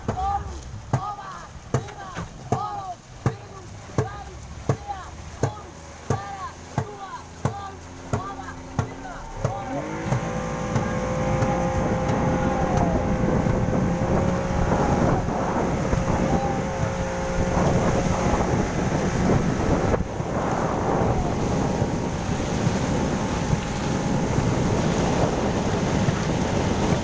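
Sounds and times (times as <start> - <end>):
rushing and splashing water: 0.0 - 27.0
wind buffeting microphone: 6.8 - 27.0.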